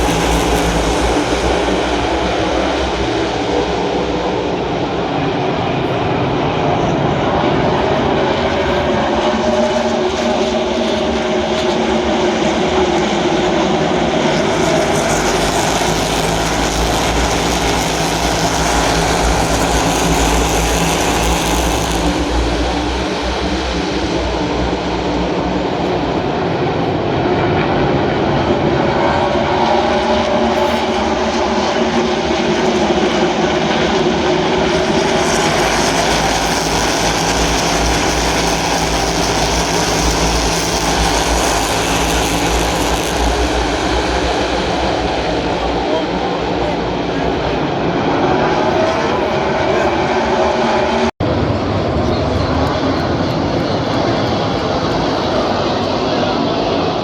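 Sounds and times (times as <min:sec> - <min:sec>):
race car engines droning: 0:00.0 - 0:57.0.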